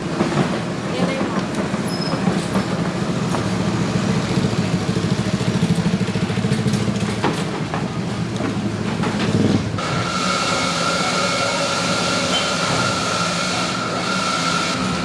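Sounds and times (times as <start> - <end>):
small engine running: 9.2 - 15.0.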